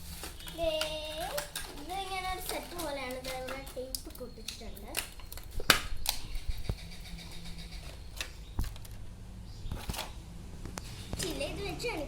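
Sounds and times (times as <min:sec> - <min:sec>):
plastic toy clicks and knocks: 0:00.4 - 0:06.5.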